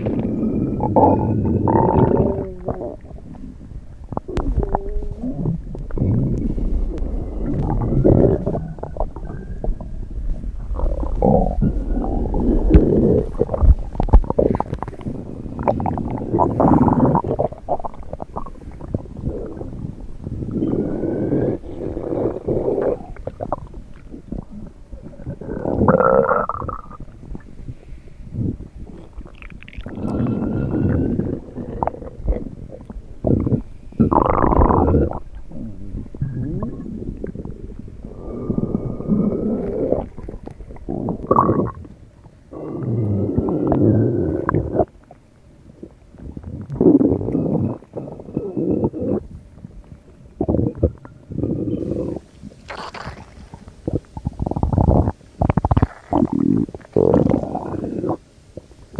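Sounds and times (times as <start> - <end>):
stomach rumbling and gurgling: 0.0 - 58.9.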